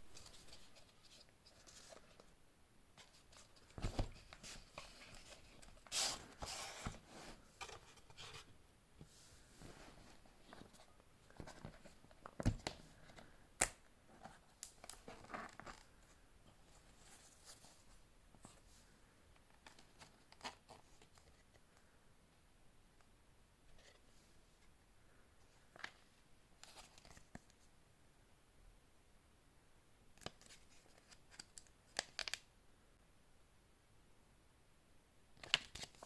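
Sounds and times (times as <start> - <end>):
paper and cardboard rustling: 3.0 - 8.5.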